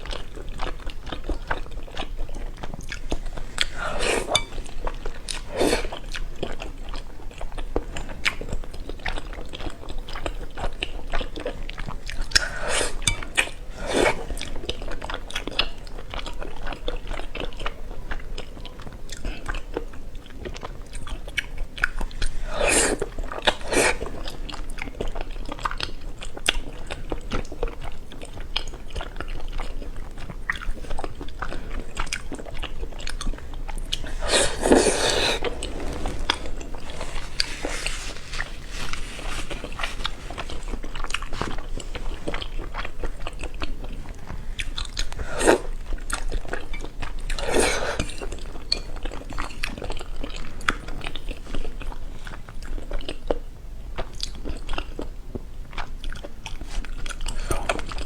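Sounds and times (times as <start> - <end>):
person chewing and biting: 0.0 - 15.7, 27.8 - 53.2.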